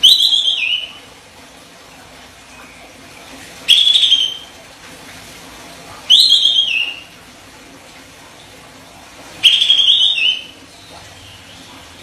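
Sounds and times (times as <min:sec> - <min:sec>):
bird singing whistled phrases: 0:00.0 - 0:01.0, 0:03.7 - 0:04.5, 0:06.1 - 0:07.1, 0:09.4 - 0:10.6.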